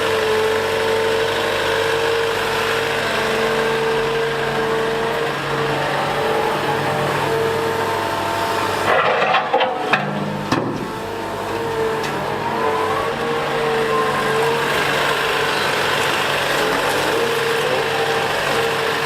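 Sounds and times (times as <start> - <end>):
excavator engine humming: 0.0 - 19.0
hydraulic whine: 0.0 - 19.0
sharp clanks and knocks: 8.8 - 11.0.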